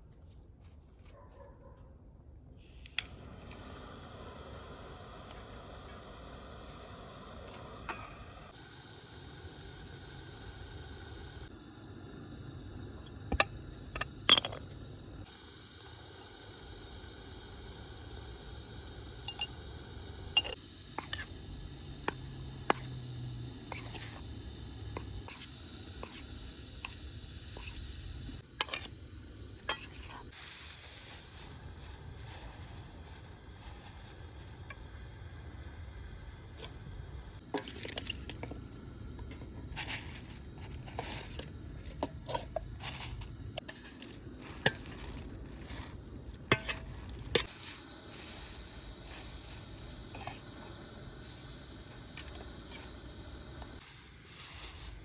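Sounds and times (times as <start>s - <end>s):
steady high hiss: 2.6s - 55.0s
utensils clinking against pots: 40.9s - 47.5s.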